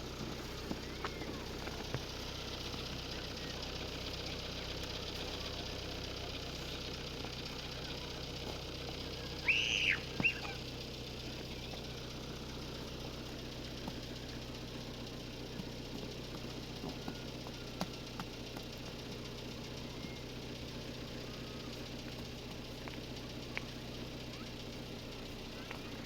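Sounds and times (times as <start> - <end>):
low engine hum: 0.0 - 26.0
brief high-pitched calls: 9.4 - 10.6.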